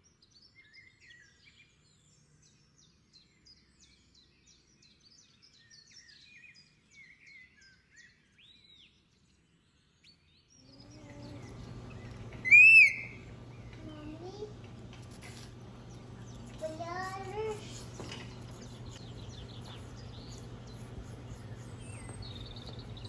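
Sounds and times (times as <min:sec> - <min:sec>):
birds chirping and whistling: 0:10.6 - 0:14.0, 0:15.3 - 0:23.0
steady hum: 0:10.8 - 0:23.0
parrot squawk: 0:12.4 - 0:13.3.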